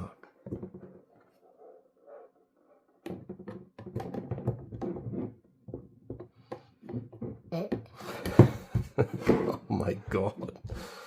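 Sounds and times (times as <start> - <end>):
device knocking and scraping on rack: 3.0 - 7.5.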